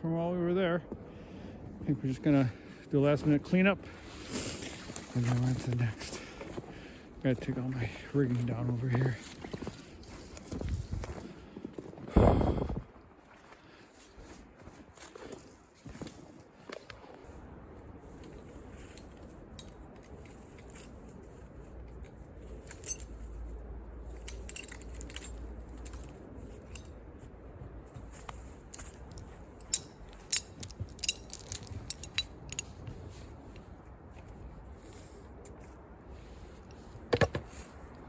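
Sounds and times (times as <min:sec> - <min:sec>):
low steady rumble: 0:17.3 - 0:38.0
rigging hardware clicking and clinking: 0:22.7 - 0:23.2, 0:24.2 - 0:27.0, 0:28.7 - 0:32.8.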